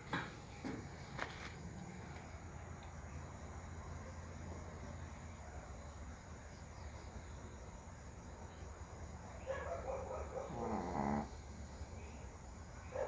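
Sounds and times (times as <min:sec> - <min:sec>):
insects chirring: 0:06.0 - 0:13.0
dog snoring: 0:10.5 - 0:11.4.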